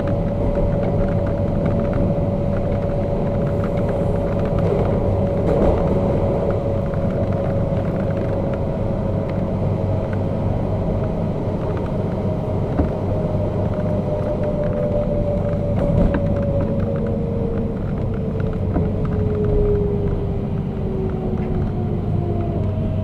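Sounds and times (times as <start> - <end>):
faint rail clicks: 0.0 - 10.3
train wheels rumbling on rail: 0.0 - 23.0.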